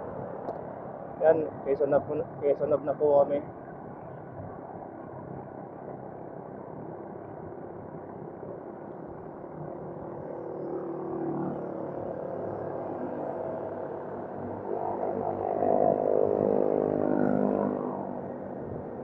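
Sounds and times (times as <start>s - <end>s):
road and wind noise: 0.0s - 19.0s
vehicle engine: 8.3s - 19.0s.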